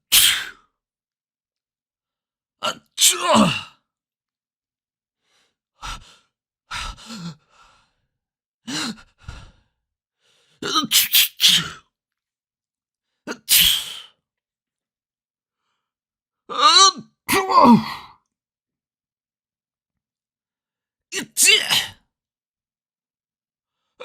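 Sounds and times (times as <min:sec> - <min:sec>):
person sneezing: 0:00.1 - 0:00.5, 0:10.6 - 0:11.8, 0:13.3 - 0:14.1, 0:21.2 - 0:22.0.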